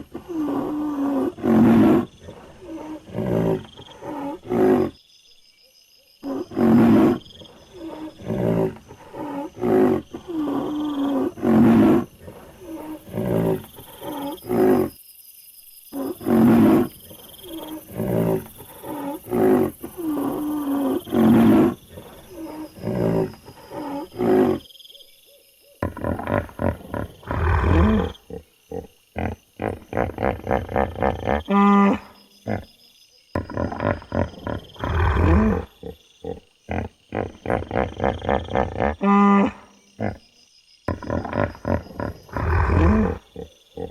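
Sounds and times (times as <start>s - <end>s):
animal roaring calls: 25.8s - 32.7s, 33.4s - 40.2s, 40.9s - 43.9s.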